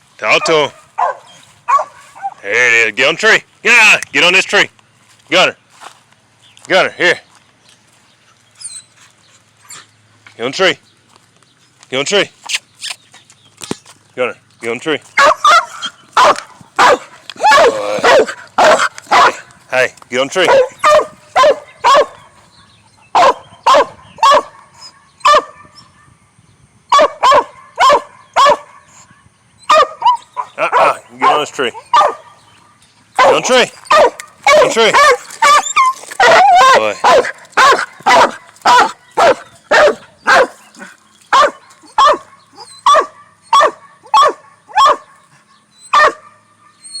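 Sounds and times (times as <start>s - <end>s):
dog barking: 0.3s - 2.4s, 15.2s - 19.5s, 20.4s - 26.2s, 26.9s - 29.0s, 29.7s - 45.3s, 45.9s - 46.8s.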